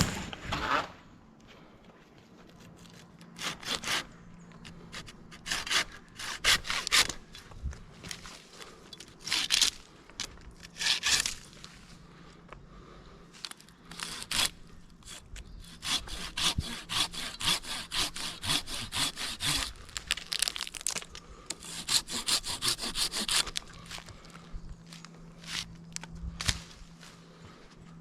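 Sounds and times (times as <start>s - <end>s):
hand saw cutting wood: 3.4s - 7.2s, 9.2s - 9.8s, 10.6s - 11.5s, 13.9s - 19.9s, 21.5s - 23.7s.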